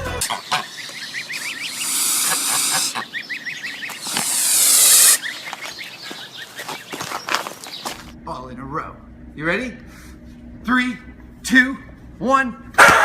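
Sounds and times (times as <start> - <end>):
bird chirping: 0.3 - 8.0
loud hisses: 1.6 - 3.0, 4.0 - 5.2.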